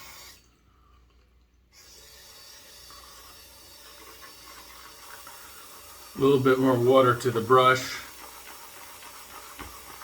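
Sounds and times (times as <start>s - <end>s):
tap water running into sink: 2.0s - 10.0s.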